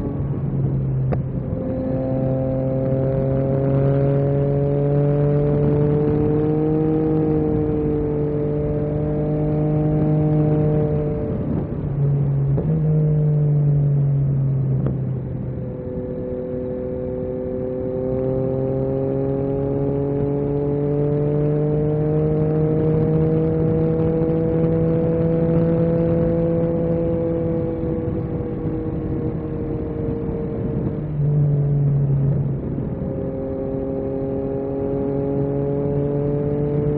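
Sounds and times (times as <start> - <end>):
motorcycle engine: 0.0 - 36.9.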